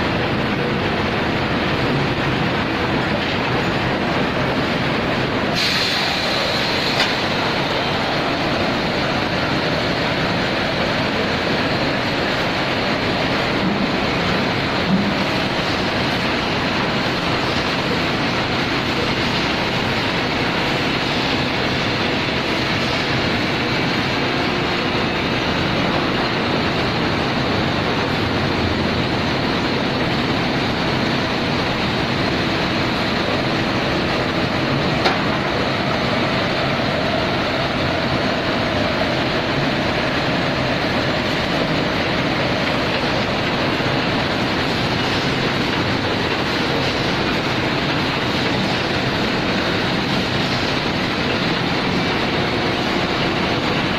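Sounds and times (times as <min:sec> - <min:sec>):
industrial veneer lathe running: 0:00.0 - 0:53.9.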